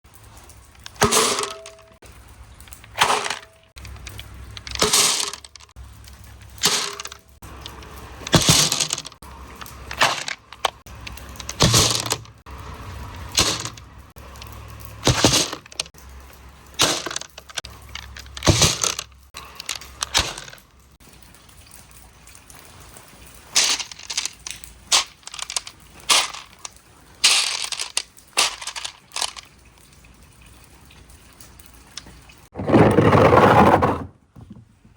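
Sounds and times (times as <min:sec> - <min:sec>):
marbles clacking and rattling: 0:00.2 - 0:21.8, 0:23.4 - 0:29.6.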